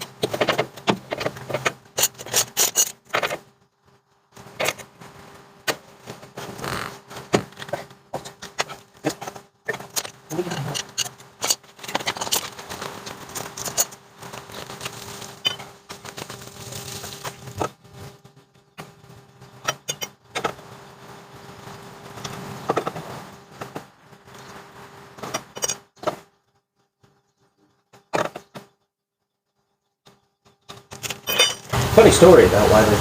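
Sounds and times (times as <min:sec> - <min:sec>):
metal tools clinking and scraping: 0:00.2 - 0:03.4, 0:07.6 - 0:12.6, 0:13.3 - 0:14.0, 0:14.8 - 0:15.8, 0:19.6 - 0:20.6, 0:25.2 - 0:25.9, 0:30.9 - 0:31.7.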